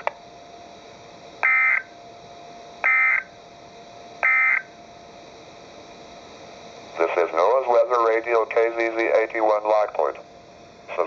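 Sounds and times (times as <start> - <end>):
warbling digital data tones: 1.4 - 1.9, 2.8 - 3.3.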